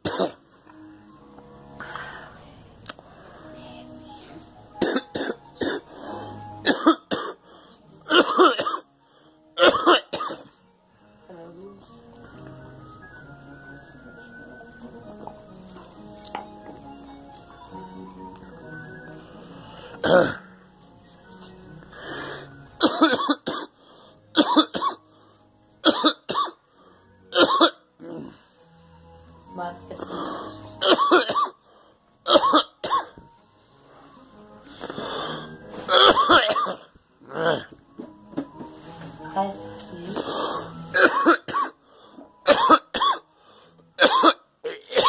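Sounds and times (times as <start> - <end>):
person coughing: 0.0 - 0.4, 4.8 - 5.9, 6.6 - 7.4, 8.1 - 8.9, 9.6 - 10.6, 20.0 - 20.5, 22.8 - 23.7, 24.4 - 25.0, 25.8 - 26.6, 27.3 - 28.4, 30.8 - 31.6, 32.3 - 33.2, 35.9 - 37.8, 40.9 - 41.8, 42.4 - 43.2, 44.0 - 45.0.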